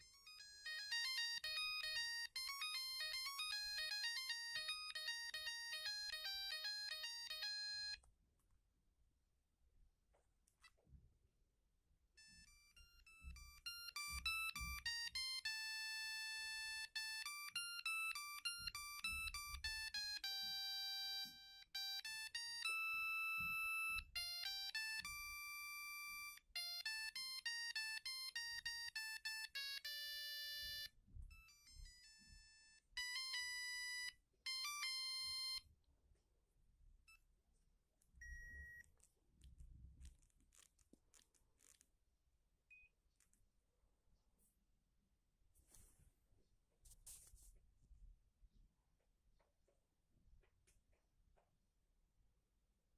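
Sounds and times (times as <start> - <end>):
mobile phone ringtone melody: 0.0 - 8.0, 12.2 - 35.7.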